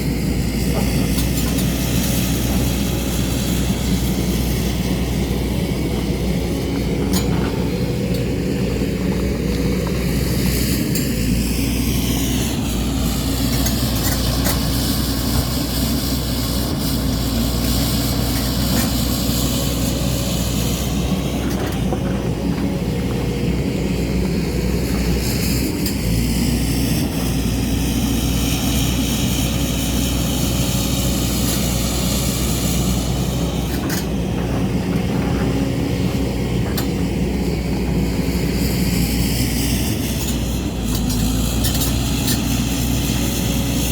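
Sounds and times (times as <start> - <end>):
diesel engine running: 0.0 - 43.9.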